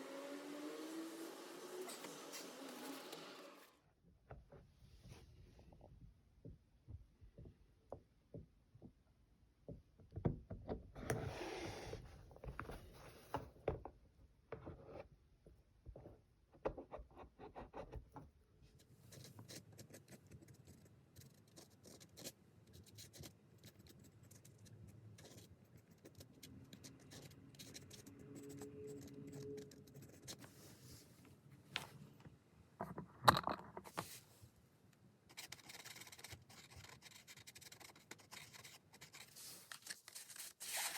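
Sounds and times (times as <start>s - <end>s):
scraping and rubbing handling noise: 11.0s - 13.6s, 29.1s - 34.6s.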